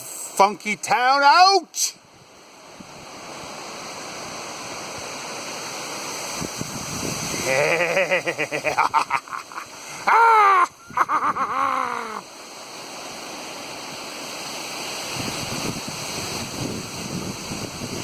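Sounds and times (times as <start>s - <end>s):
wind in trees and microphone: 0.0s - 18.0s
man whooping: 10.0s - 12.3s.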